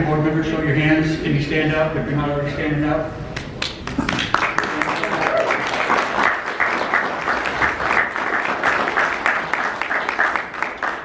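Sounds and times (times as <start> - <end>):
audience applauding: 3.4 - 11.0.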